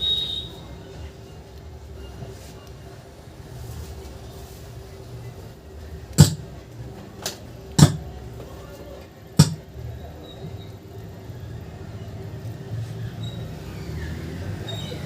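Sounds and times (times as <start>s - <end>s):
sharp loud pops: 6.2s - 6.5s, 9.4s - 9.6s.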